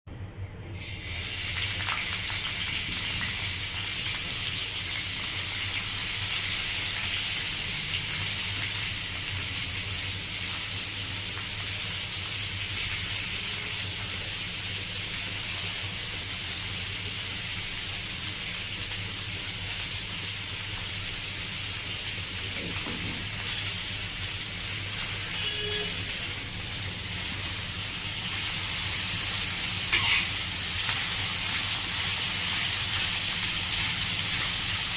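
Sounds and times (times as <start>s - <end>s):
onions sizzling in hot oil: 0.8s - 34.9s.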